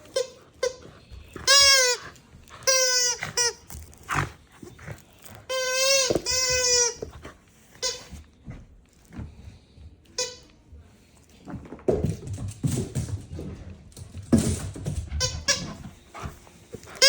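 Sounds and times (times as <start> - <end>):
squeaky dog toy squeaking: 1.4 - 3.9, 5.5 - 7.2.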